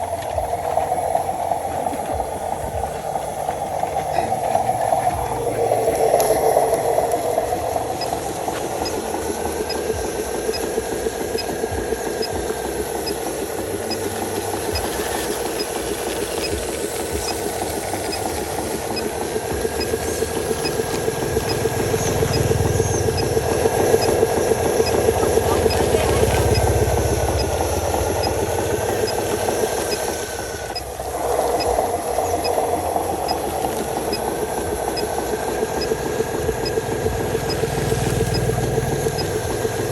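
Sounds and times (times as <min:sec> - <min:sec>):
small electric motor buzzing: 0:00.0 - 0:39.9.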